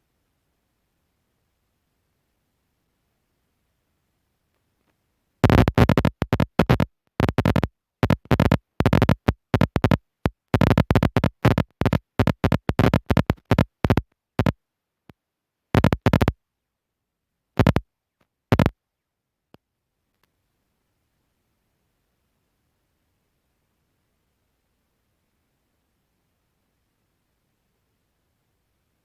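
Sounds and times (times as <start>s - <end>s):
harsh buzzing bursts: 5.4s - 14.6s, 15.8s - 16.3s, 17.6s - 17.8s, 18.5s - 18.7s.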